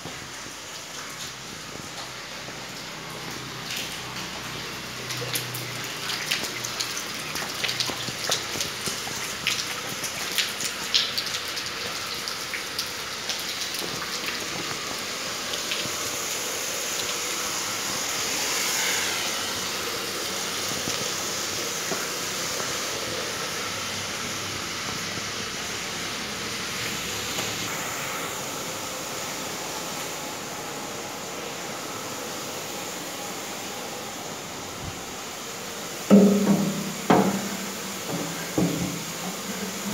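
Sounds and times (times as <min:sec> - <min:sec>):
water gushing through filter: 0:36.0 - 0:39.9.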